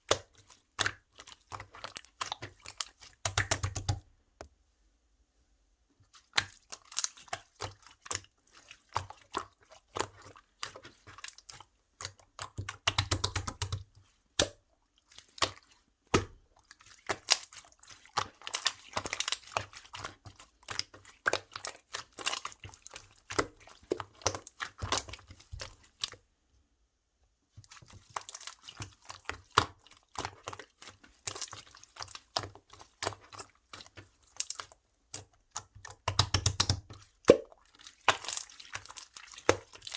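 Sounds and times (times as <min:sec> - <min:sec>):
slime sticky wet clicks: 0:31.5 - 0:37.5.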